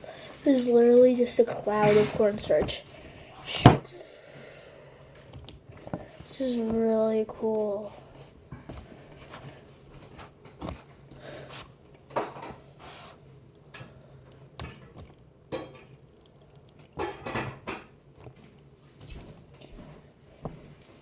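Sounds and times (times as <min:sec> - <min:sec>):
containers and utensils clinking: 0:13.7 - 0:18.7.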